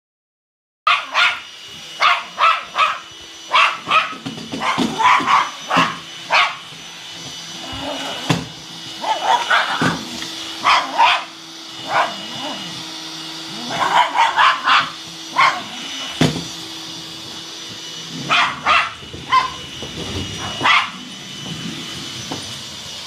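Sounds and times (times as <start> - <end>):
dog barking sharply: 0.9 - 1.4, 9.0 - 10.0, 10.6 - 12.2, 13.7 - 15.7, 18.3 - 19.6, 20.4 - 21.0
vacuum cleaner humming: 0.9 - 23.0.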